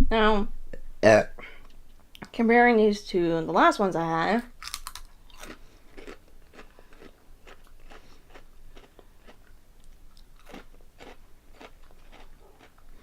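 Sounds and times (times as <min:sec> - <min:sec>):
chewing crunchy snack: 0:04.6 - 0:13.0.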